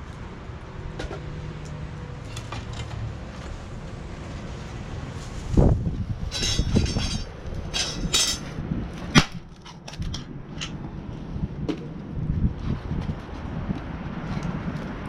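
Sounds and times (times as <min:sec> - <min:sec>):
metal parts clanking: 0:06.2 - 0:10.8.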